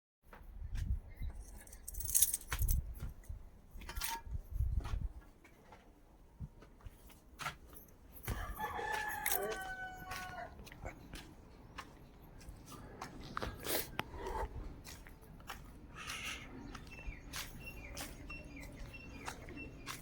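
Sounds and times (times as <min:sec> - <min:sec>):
rooster crowing: 0:08.3 - 0:10.6.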